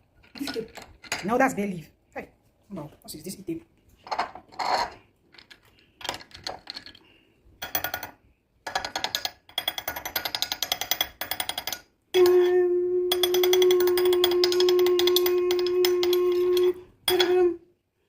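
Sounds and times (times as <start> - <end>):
fast percussion: 13.1 - 17.5.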